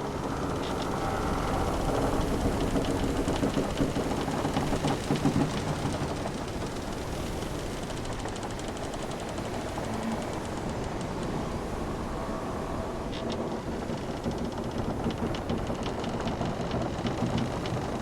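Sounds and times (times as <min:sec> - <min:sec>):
wind: 0:00.0 - 0:18.0
ship timbers creaking: 0:08.6 - 0:18.0.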